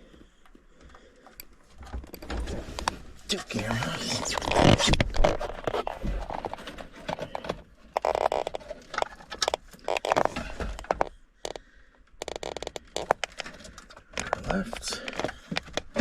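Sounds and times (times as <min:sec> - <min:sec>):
rustling scrapes: 0:02.3 - 0:10.9
plastic parts clicking: 0:04.0 - 0:16.0.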